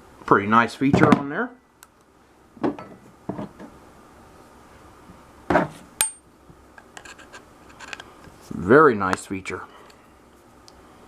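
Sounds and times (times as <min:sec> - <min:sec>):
metallic ring: 0:06.0 - 0:06.3.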